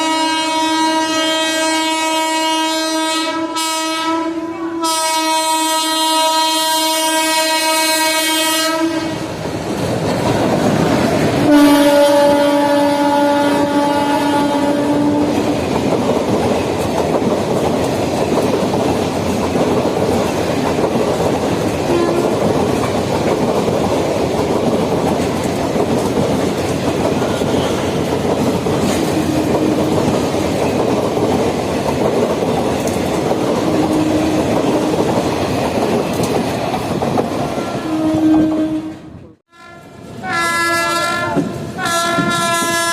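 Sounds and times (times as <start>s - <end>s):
locomotive horn blast: 0.0s - 9.3s, 11.4s - 15.5s, 21.9s - 22.5s, 29.0s - 30.0s, 33.6s - 35.0s, 37.6s - 42.9s
train rumbling over rails: 0.0s - 42.9s.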